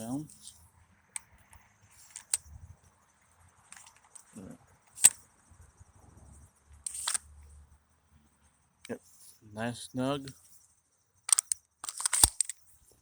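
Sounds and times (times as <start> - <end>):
sharp gear clicks: 6.9 - 7.2, 11.3 - 12.6.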